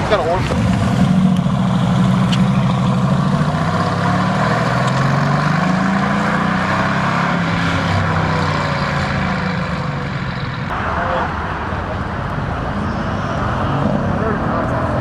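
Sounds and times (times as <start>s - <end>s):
car engine running at low revs: 0.0s - 6.6s.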